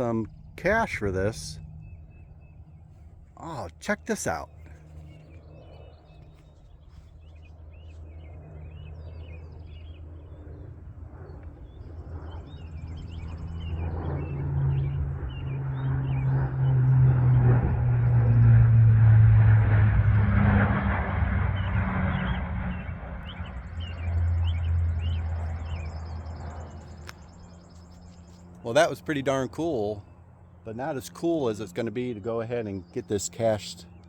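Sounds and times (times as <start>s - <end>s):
birds chirping: 0.0s - 34.0s
vehicle engine passing: 13.0s - 27.1s.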